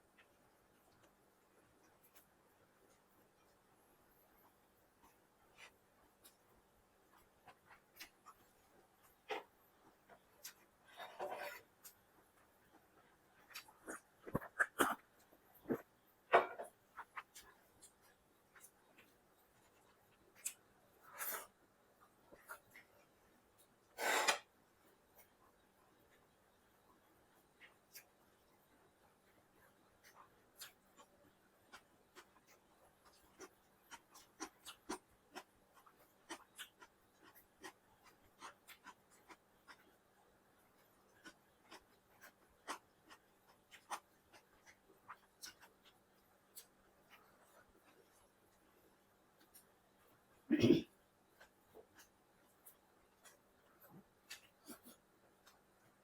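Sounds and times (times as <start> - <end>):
chewing clicks and smacks: 30.0 - 40.0, 40.8 - 48.3, 51.4 - 56.0.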